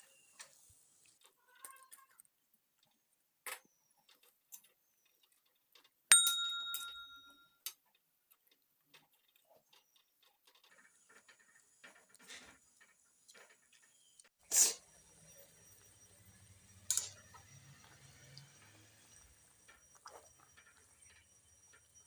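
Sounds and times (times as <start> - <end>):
sharp metallic clink ringing: 6.1 - 7.5.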